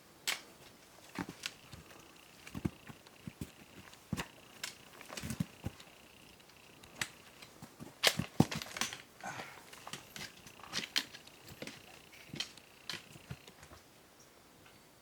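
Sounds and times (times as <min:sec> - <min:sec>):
footsteps on rocky trail: 0:00.9 - 0:13.7.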